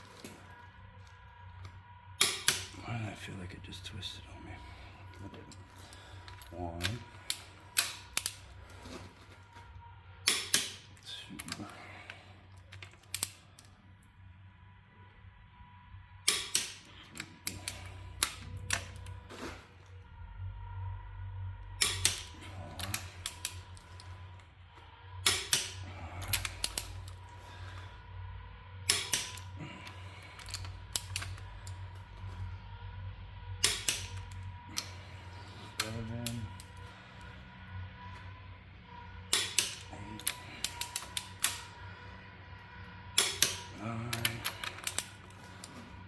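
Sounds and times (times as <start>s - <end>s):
low hum: 0.0s - 46.0s
torque wrench clicking: 10.3s - 10.8s, 21.8s - 23.7s, 28.9s - 29.5s, 33.6s - 34.9s, 39.3s - 41.6s
wrench ratcheting: 39.3s - 41.6s.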